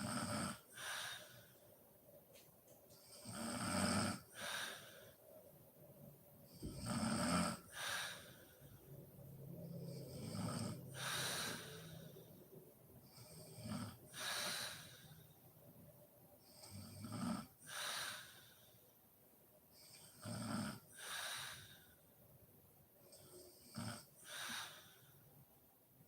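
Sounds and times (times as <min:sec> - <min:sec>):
woman snoring: 0:00.0 - 0:01.1, 0:03.1 - 0:04.8, 0:06.5 - 0:08.4, 0:09.6 - 0:12.3, 0:13.1 - 0:15.0.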